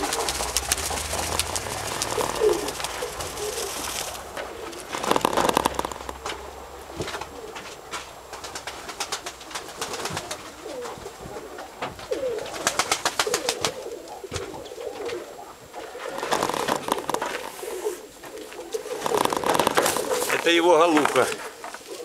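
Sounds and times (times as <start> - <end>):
rapid clicking: 0.0 - 10.4, 16.2 - 17.5, 18.9 - 20.6
pigeons cooing: 0.0 - 22.0.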